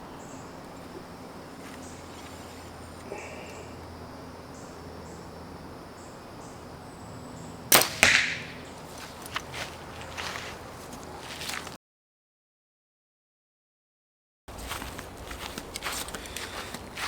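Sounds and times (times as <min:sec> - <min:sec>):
bow string snap: 0:07.7 - 0:08.6
arrow hitting target: 0:07.7 - 0:08.7.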